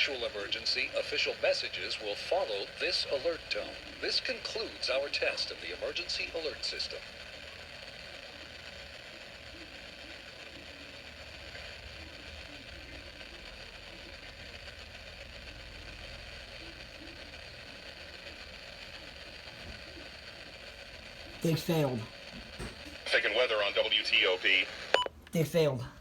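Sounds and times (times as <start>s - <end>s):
faint hiss: 0.0s - 25.7s.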